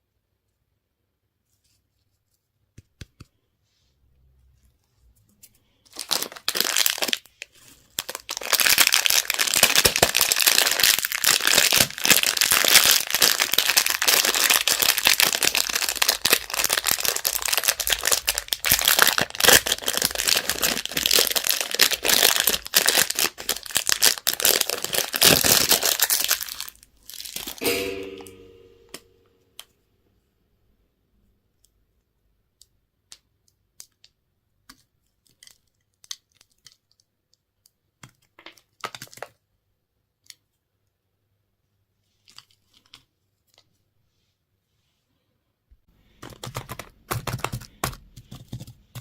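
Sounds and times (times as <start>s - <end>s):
packaging wrapper crinkling: 5.8s - 27.6s, 35.1s - 37.1s.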